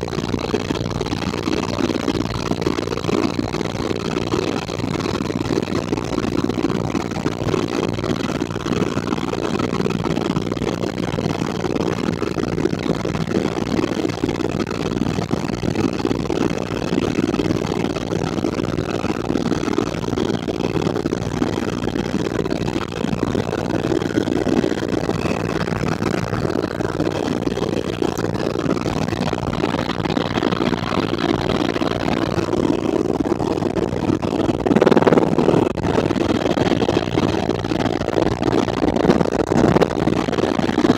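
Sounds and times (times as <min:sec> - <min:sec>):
helicopter cabin drone: 0:00.0 - 0:40.9.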